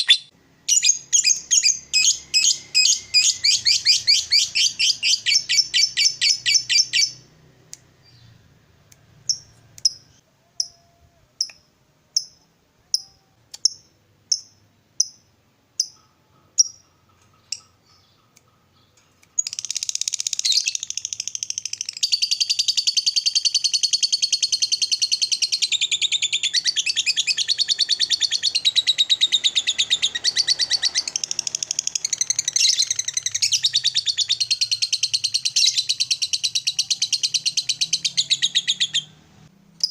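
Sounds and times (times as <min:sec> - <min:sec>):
lovebird chattering trill: 0:00.0 - 0:07.2
lovebird sharp chirps: 0:00.0 - 0:07.3, 0:09.2 - 0:10.8, 0:11.4 - 0:39.1.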